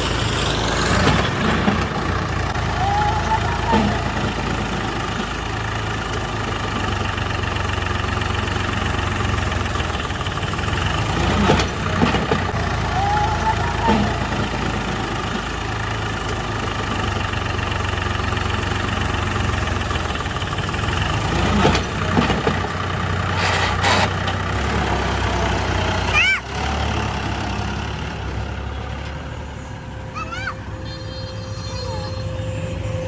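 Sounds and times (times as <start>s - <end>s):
heavy diesel engine running: 0.0s - 33.0s
short rising squeaks: 30.2s - 33.0s.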